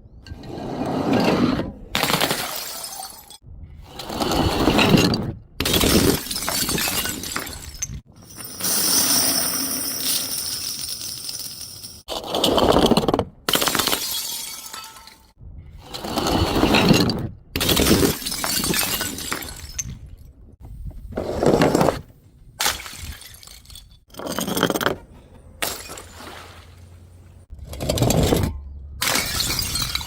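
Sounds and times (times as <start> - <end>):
glass bottles smashing: 2.0 - 3.4, 5.8 - 12.1, 13.5 - 15.3, 17.7 - 19.9, 22.7 - 24.5, 29.0 - 30.0.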